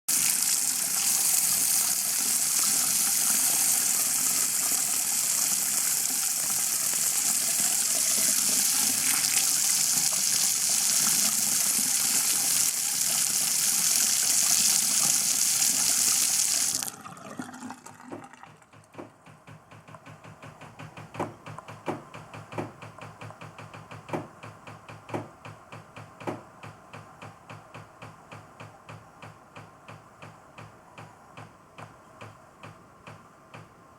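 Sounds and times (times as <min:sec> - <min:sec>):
water running from faucet: 0:00.1 - 0:18.2
water pipes knocking: 0:18.0 - 0:33.7.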